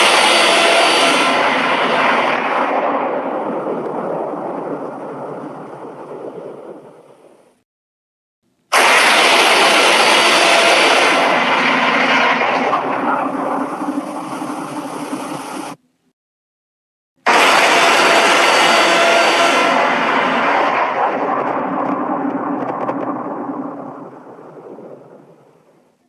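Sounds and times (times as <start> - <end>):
hiss: 8.7 - 11.4, 13.8 - 15.8.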